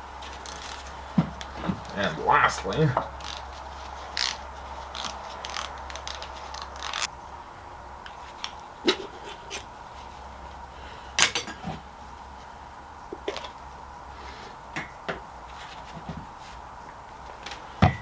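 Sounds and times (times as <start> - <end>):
low steady hum: 0.0 - 18.0
metal tools and parts clanking: 0.2 - 0.9.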